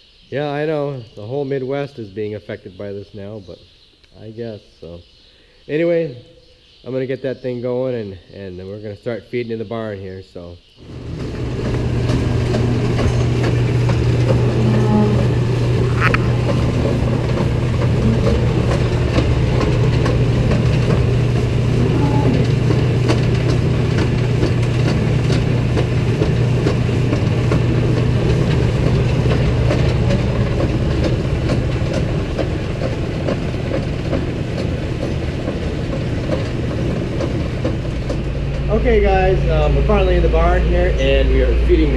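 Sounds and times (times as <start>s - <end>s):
farm machine engine running: 10.8s - 41.9s
rattling and clattering: 10.9s - 41.9s.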